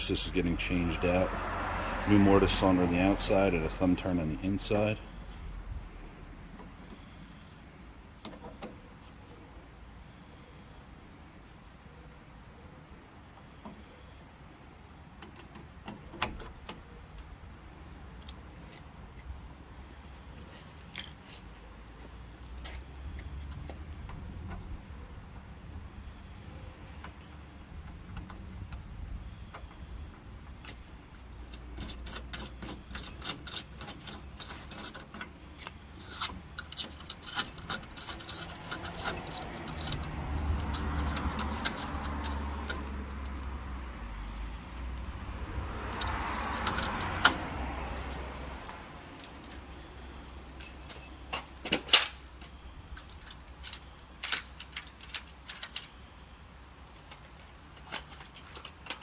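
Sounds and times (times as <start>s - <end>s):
keys jangling: 31.5s - 43.6s, 45.2s - 52.3s, 53.0s - 56.3s.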